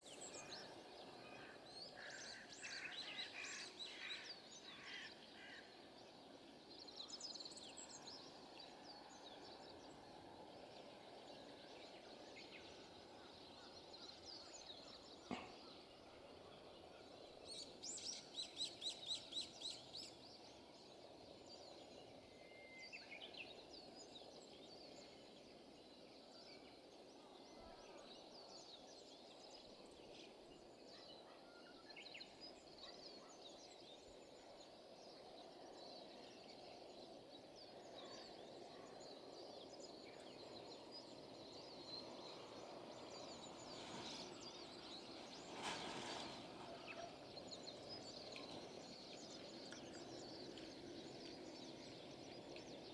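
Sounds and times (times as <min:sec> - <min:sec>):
birds chirping: 0:39.6 - 0:52.9.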